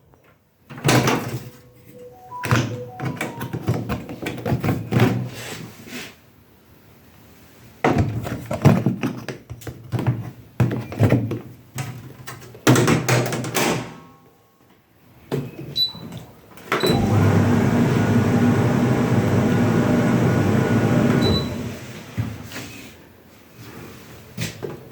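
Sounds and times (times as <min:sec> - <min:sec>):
short high beeps: 0:01.9 - 0:03.6
dryer motor hum: 0:16.8 - 0:22.5.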